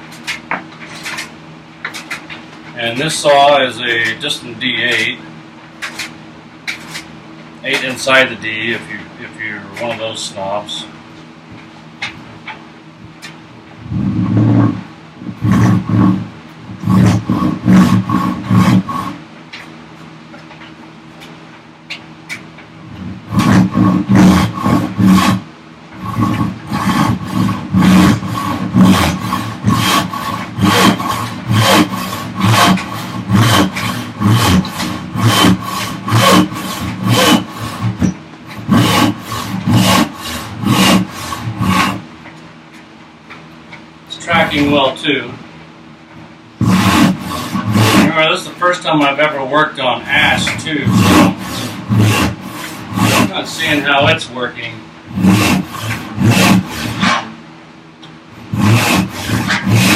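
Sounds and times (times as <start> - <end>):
handsaw cutting wood: 2.8 - 5.1, 7.7 - 8.9, 13.9 - 19.2, 22.9 - 42.0, 44.2 - 45.0, 46.6 - 48.6, 50.0 - 57.3, 58.4 - 59.9.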